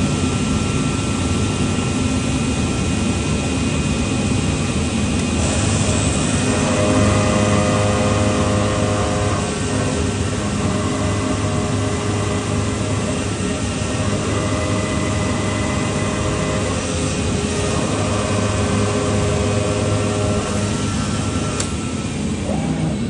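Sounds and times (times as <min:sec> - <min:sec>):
cnc machine cutting: 0:04.0 - 0:23.0
whine of held tones: 0:06.0 - 0:23.0.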